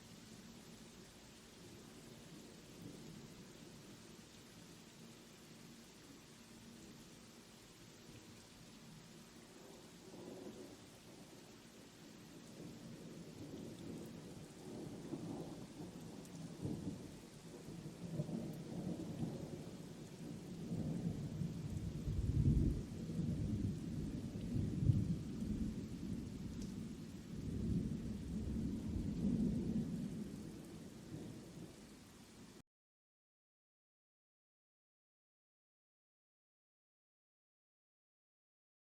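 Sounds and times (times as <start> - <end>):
steady rain: 0.0 - 32.6
thunder rumbling: 17.8 - 31.7.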